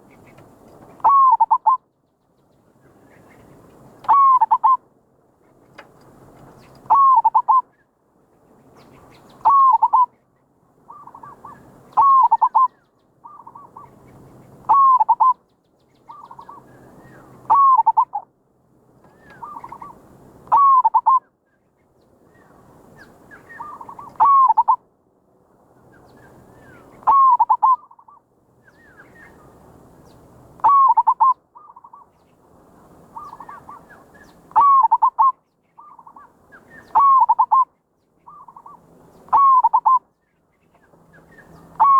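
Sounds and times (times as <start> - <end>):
dove cooing: 1.0 - 1.8, 4.0 - 4.8, 6.9 - 7.6, 9.4 - 10.1, 10.9 - 14.0, 14.7 - 15.4, 17.5 - 18.2, 19.2 - 21.2, 23.4 - 24.8, 27.0 - 28.2, 30.6 - 32.1, 33.1 - 37.7, 38.3 - 40.0.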